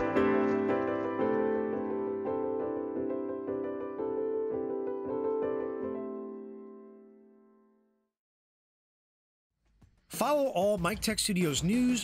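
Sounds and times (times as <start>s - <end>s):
soft piano music: 0.0s - 8.2s.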